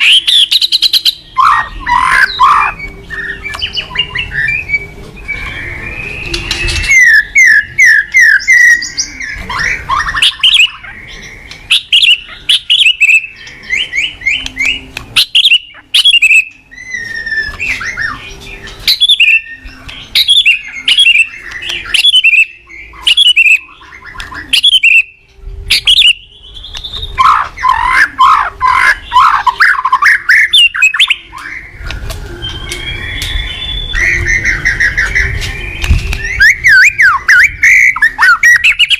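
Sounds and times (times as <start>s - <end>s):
bird singing varied whistles: 0.0s - 38.9s
sharp bird clicking notes: 14.3s - 16.6s, 18.9s - 22.5s, 35.0s - 36.9s.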